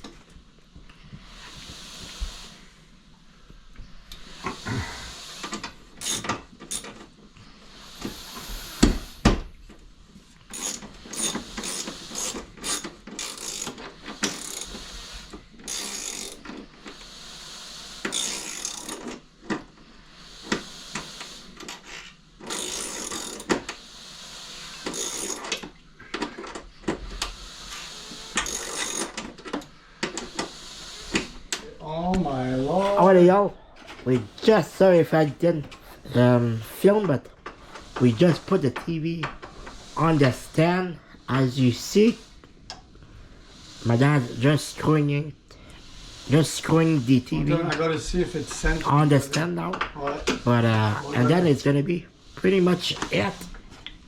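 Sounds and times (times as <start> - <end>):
hand tools clicking and scraping: 4.1 - 9.3, 10.3 - 17.0, 18.0 - 19.8, 20.4 - 23.8, 24.5 - 42.9, 43.6 - 51.8, 52.4 - 54.0.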